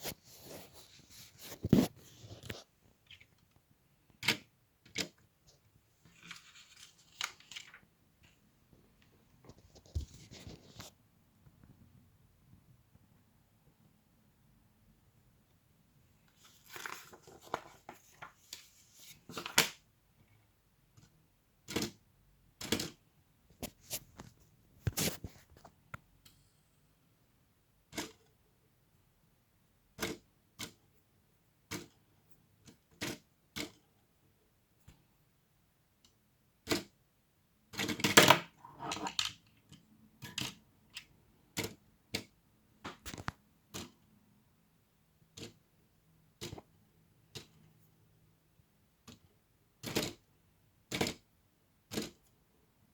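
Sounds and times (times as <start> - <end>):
rustling rummaging: 16.3 - 19.6.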